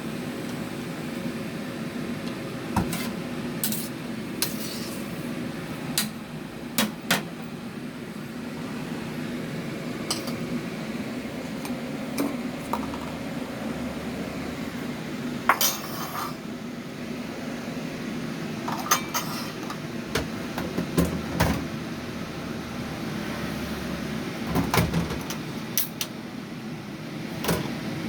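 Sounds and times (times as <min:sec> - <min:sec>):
dishes and pots clinking: 0:10.1 - 0:10.4, 0:15.5 - 0:16.4, 0:18.7 - 0:21.6.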